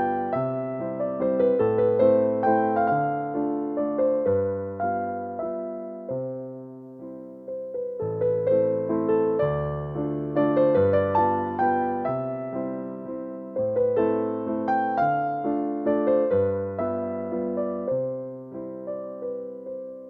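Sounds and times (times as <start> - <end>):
soft piano melody: 0.0 - 20.0.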